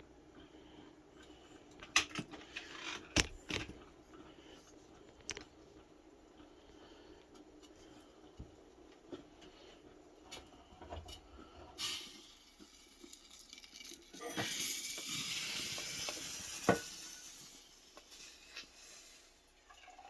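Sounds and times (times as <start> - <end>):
coffee pouring into a cup: 12.2 - 20.0.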